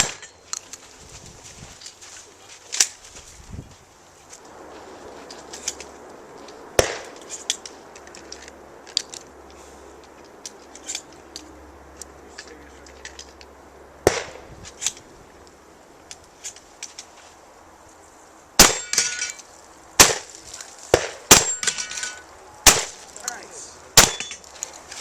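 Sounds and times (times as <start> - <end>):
shotgun shots with echo: 6.8 - 7.1, 14.0 - 14.4, 22.6 - 23.0, 24.0 - 24.3.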